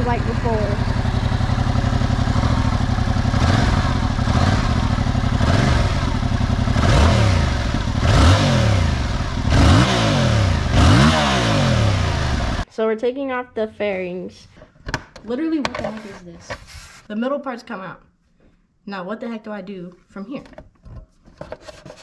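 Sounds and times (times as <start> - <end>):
motorcycle engine revving: 0.0 - 12.7.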